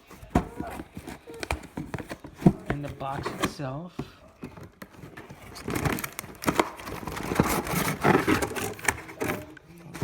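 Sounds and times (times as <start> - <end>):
packaging crinkling and rustling: 4.4 - 10.0.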